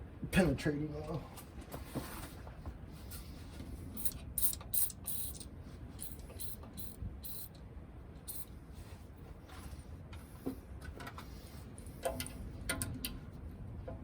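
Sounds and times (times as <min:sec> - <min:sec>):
aerosol spray hissing bursts: 0:04.0 - 0:05.4, 0:06.0 - 0:07.5, 0:08.3 - 0:08.5.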